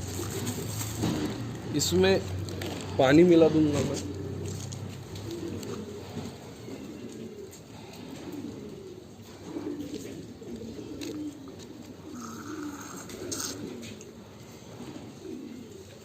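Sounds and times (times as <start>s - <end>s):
pigeons cooing: 0.0s - 16.0s.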